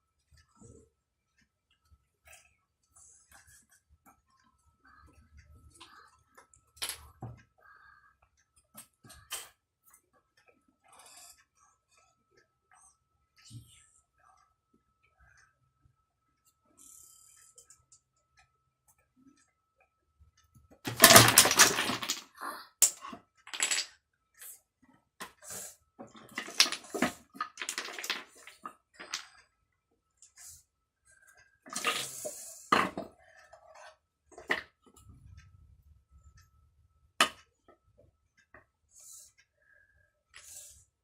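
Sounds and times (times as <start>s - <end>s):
wooden toy blocks clattering: 20.9s - 23.9s, 26.2s - 29.3s.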